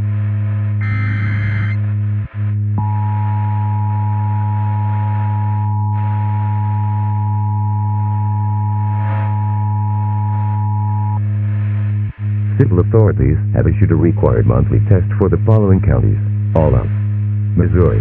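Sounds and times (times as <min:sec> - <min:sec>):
low electrical hum: 0:00.0 - 0:18.0
dual-tone alert signal: 0:00.8 - 0:01.8.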